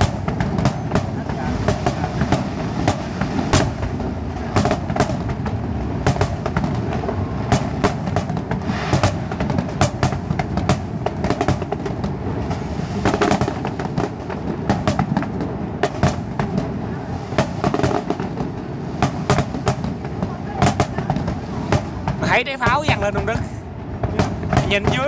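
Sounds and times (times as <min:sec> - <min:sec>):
low rumble: 0:00.0 - 0:17.4
fireworks bursting: 0:00.0 - 0:25.0.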